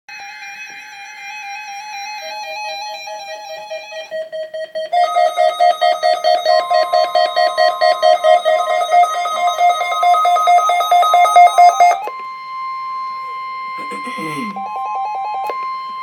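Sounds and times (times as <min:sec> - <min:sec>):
pulsing electronic alert tone: 0:05.0 - 0:12.1
steady higher tone: 0:05.0 - 0:12.1.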